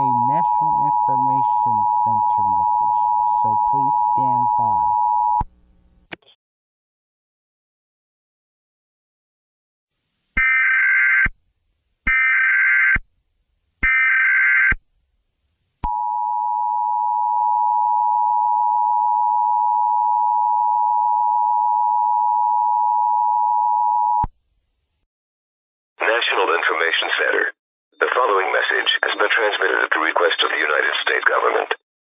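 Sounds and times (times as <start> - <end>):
steady two-tone attention signal: 0.0 - 5.4.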